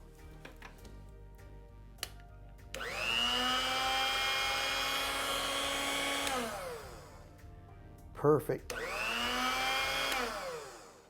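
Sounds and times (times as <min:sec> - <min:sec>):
key cutting machine whine: 0:02.8 - 0:07.2, 0:08.7 - 0:11.0.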